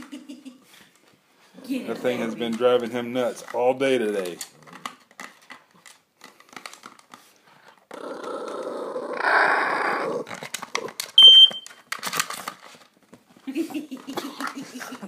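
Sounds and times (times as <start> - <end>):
dog growling: 1.5 - 2.4, 7.9 - 10.4
dog chewing plastic: 2.1 - 8.7, 10.2 - 11.2, 11.8 - 13.2
smoke detector chirp: 11.2 - 11.8.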